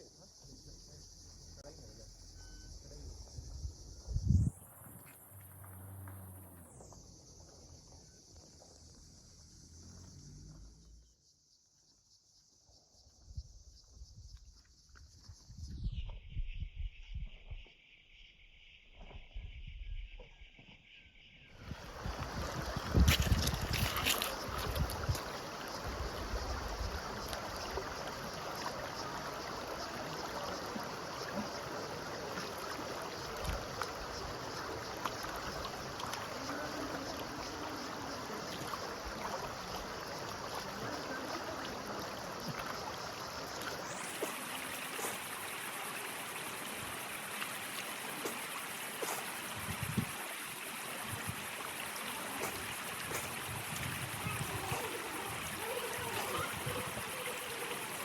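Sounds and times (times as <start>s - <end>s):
wind buffeting microphone: 3.4s - 4.6s, 21.6s - 27.2s, 53.0s - 57.2s
stream water rushing: 21.6s - 58.0s.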